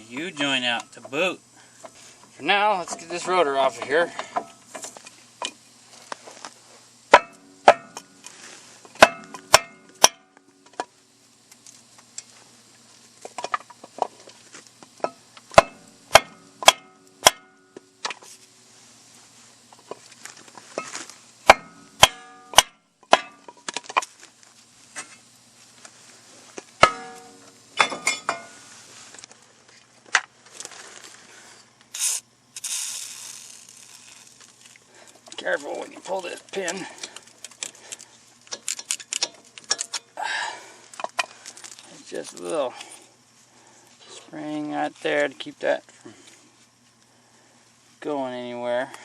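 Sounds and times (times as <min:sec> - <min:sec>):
hammer striking metal rotor: 0:07.1 - 0:08.1, 0:09.0 - 0:10.4, 0:15.1 - 0:17.7, 0:21.5 - 0:23.5, 0:26.8 - 0:28.5.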